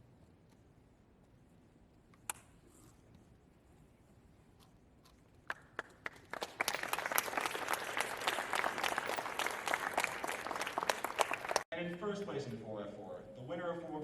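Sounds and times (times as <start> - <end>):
audience applause: 5.8 - 11.7.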